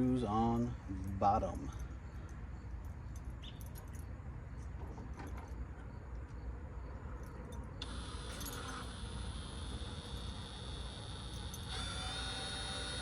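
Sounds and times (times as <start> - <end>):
small screws clicking and rattling: 7.2 - 8.9, 9.7 - 13.0
thin high whine: 7.8 - 13.0.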